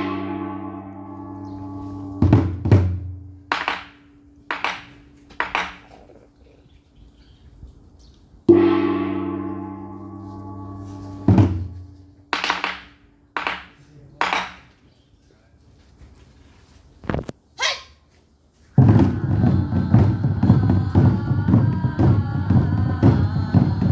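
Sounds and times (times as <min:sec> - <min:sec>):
gong ringing: 0:00.0 - 0:03.4, 0:08.5 - 0:12.1
deep drum stroke: 0:00.0 - 0:03.7, 0:08.5 - 0:12.2, 0:18.8 - 0:23.9
sharp drum strikes: 0:00.0 - 0:05.8, 0:08.5 - 0:13.6, 0:18.8 - 0:23.9.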